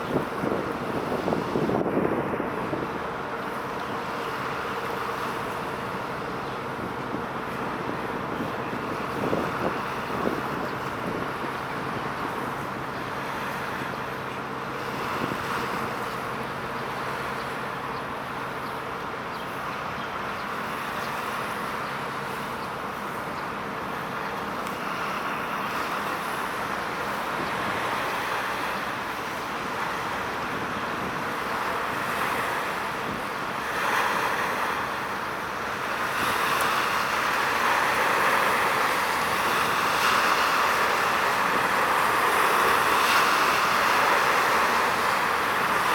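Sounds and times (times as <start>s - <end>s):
wind noise on microphone: 0.0s - 3.2s, 6.5s - 13.6s, 14.9s - 16.1s, 30.3s - 33.8s.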